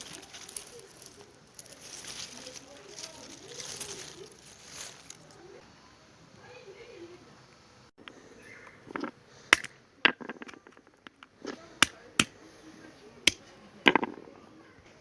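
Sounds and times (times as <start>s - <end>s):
objects clicking and knocking: 0.0s - 5.3s, 8.8s - 12.4s, 13.3s - 14.3s
rustling: 0.0s - 5.6s, 8.0s - 12.4s.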